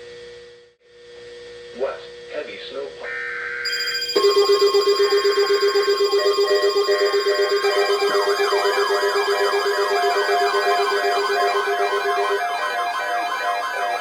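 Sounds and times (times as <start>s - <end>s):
pulsing electronic attention tone: 3.7s - 14.0s
siren-like sweeps: 3.7s - 14.0s
digital data burst: 3.8s - 14.0s.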